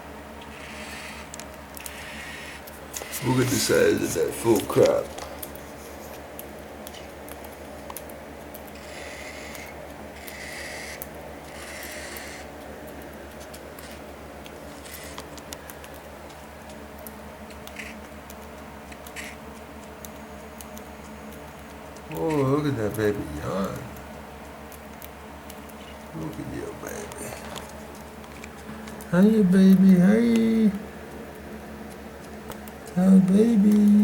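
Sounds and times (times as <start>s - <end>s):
steady low hum: 0.0s - 34.0s
faint scratching and rustling: 0.5s - 6.2s.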